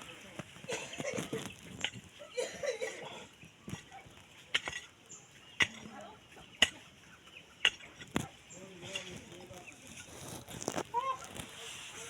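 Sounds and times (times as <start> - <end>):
faint voices: 0.0 - 12.0.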